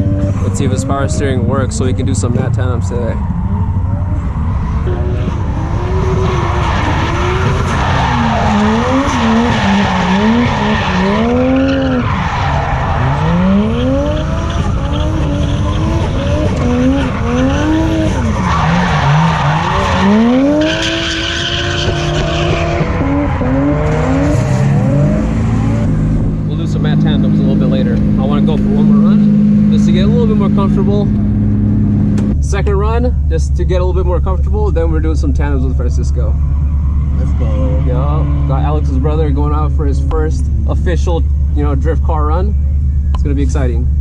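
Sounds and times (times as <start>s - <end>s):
car engine revving: 0.0s - 44.0s
tyres squealing and skidding: 2.5s - 25.9s, 36.1s - 40.1s.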